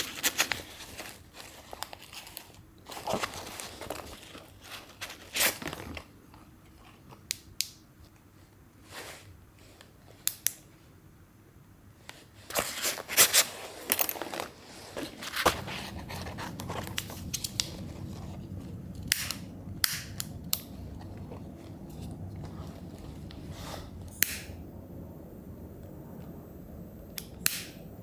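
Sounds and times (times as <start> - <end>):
low rustle: 12.3 - 27.2.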